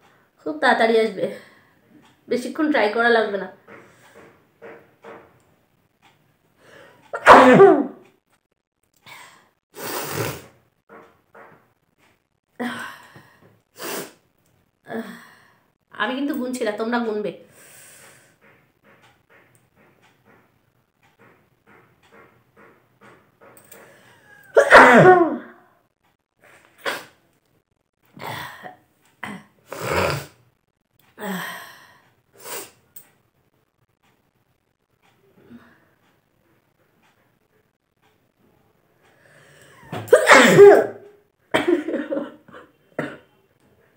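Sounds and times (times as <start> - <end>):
woman sneezing: 7.2 - 7.9, 24.5 - 25.5, 39.8 - 41.1
breathy bursts: 23.7 - 24.6.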